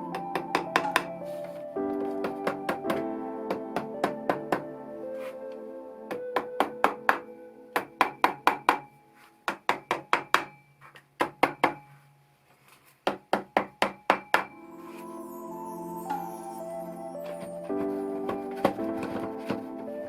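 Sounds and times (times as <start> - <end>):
background music: 0.0 - 9.5, 14.3 - 20.0.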